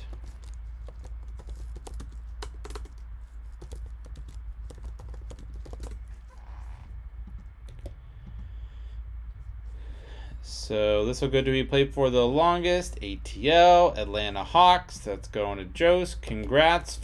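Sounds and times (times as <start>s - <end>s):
rapid light clicks and taps: 0.0s - 6.4s, 7.2s - 8.8s
steady low hum: 0.0s - 17.0s.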